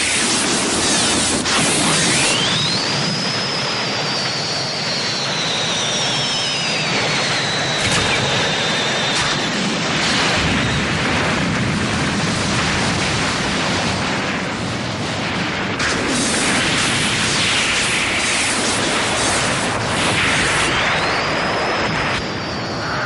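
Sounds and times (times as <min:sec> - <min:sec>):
blast: 0:00.0 - 0:03.4, 0:07.5 - 0:23.0
falling whine: 0:00.0 - 0:23.0
sharp cracks: 0:07.8 - 0:08.4.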